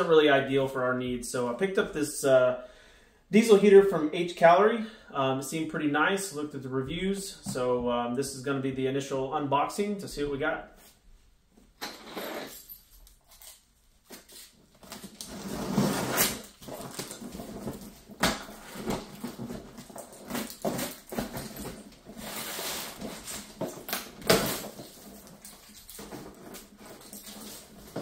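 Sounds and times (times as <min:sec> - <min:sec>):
cardboard box being opened: 0:14.8 - 0:28.0.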